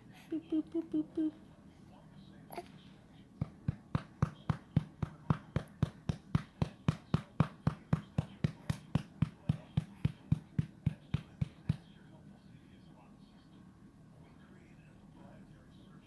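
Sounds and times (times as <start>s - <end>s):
hand patting baby's back: 3.4s - 11.9s.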